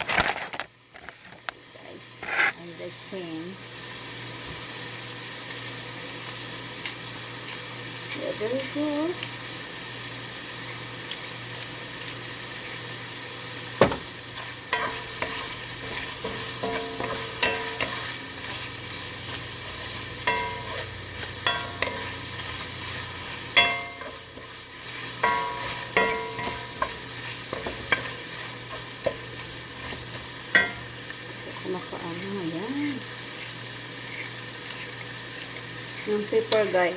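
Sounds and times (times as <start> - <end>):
meat sizzling in a frying pan: 0.3 - 36.9
metal utensil clinking on pan: 14.7 - 18.2, 19.8 - 22.6, 23.5 - 29.3, 29.9 - 31.0.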